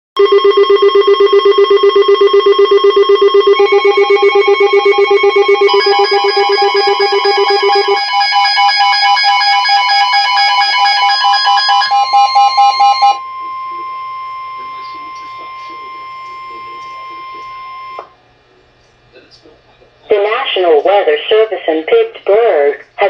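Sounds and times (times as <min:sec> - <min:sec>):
pulsing electronic alert tone: 0:00.2 - 0:18.0.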